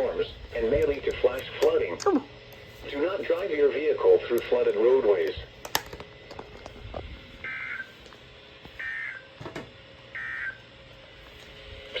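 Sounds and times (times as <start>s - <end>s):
faint radio static with clicks: 0.0s - 8.8s.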